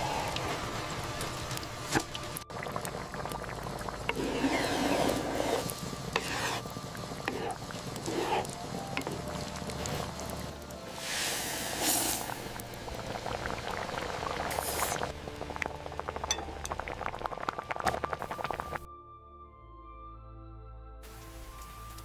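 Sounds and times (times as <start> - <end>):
utensil scraping in cookware: 4.1 - 9.2.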